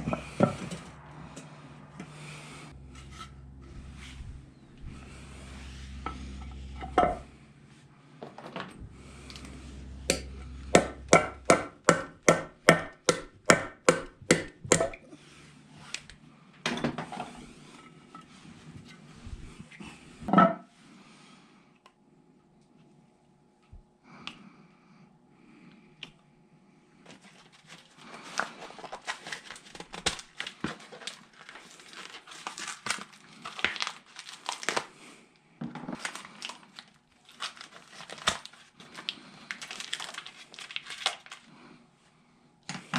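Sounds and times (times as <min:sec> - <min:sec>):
low hum: 0:00.0 - 0:25.9.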